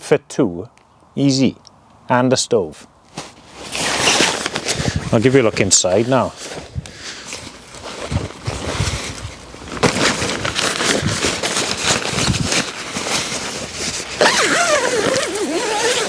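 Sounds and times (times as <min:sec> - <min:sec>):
tent fabric rustling: 0:03.0 - 0:16.0
wind buffeting microphone: 0:04.8 - 0:05.3, 0:08.1 - 0:09.5, 0:12.1 - 0:12.5.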